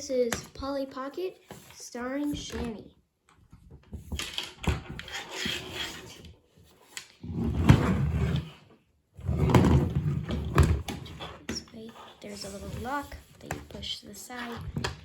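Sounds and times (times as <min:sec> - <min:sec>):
knocking and rubbing on plastic: 0:09.2 - 0:15.0.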